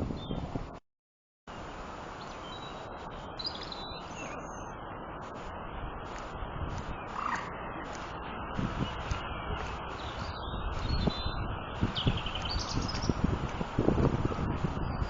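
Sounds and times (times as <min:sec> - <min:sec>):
outdoor rush of noise: 0:01.5 - 0:15.0
birds calling: 0:02.2 - 0:13.3.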